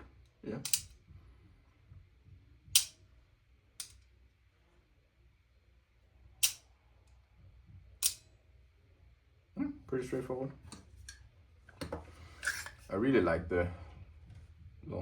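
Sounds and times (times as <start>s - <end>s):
rifle trigger mechanism clicks: 0.7s - 0.9s.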